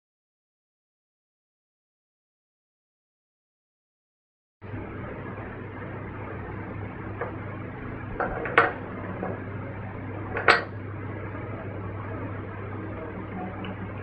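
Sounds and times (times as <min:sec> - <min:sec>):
steady low hum: 0:04.6 - 0:14.0.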